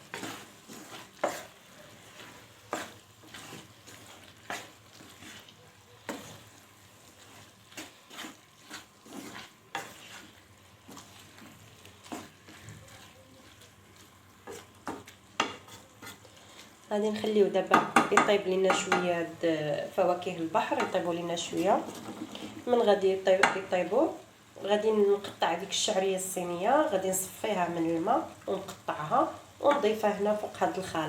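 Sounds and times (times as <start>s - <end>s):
faint sizzle: 0.0s - 31.0s
spoon scraping and tapping a pan: 14.4s - 16.3s, 17.6s - 19.1s, 20.6s - 21.0s, 23.3s - 23.7s, 29.6s - 30.0s.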